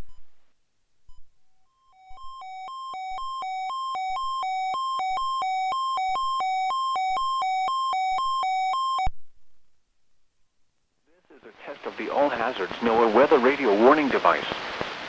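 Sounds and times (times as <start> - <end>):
hi-lo electronic alarm beeps: 1.1 - 9.1.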